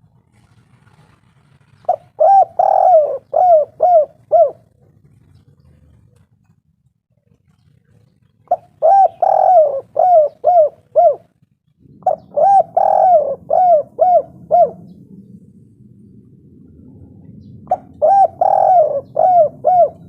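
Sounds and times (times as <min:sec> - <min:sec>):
dove cooing: 0:01.7 - 0:06.3, 0:07.9 - 0:15.5, 0:16.6 - 0:20.0.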